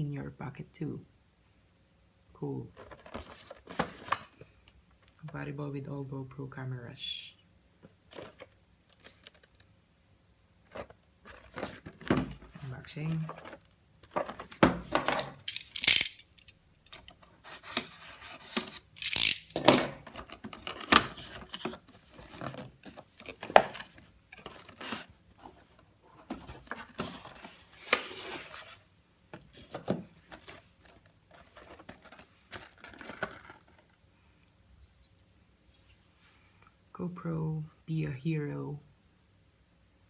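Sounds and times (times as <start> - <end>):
packaging rustling and tearing: 17.5 - 25.6, 30.2 - 34.0.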